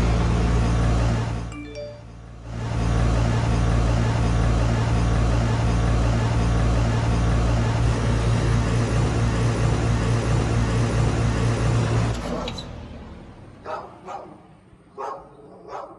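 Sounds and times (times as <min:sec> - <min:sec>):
heat pump humming: 0:00.0 - 0:12.6.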